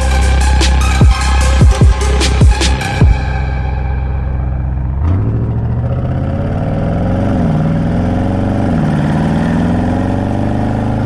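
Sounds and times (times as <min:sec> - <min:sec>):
car engine accelerating hard: 0:02.5 - 0:11.0.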